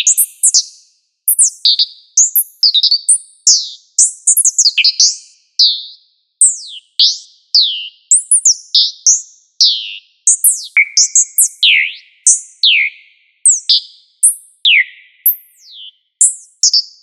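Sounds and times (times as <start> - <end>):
synthesized robot bird chirps: 10.3 - 12.0.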